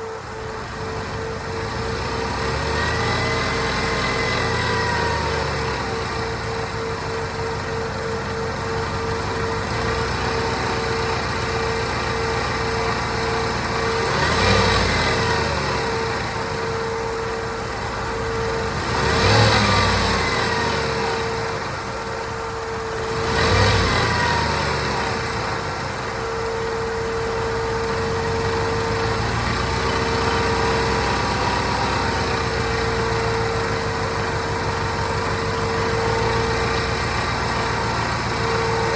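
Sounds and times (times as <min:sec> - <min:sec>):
engine idling and revving: 0:00.0 - 0:38.9.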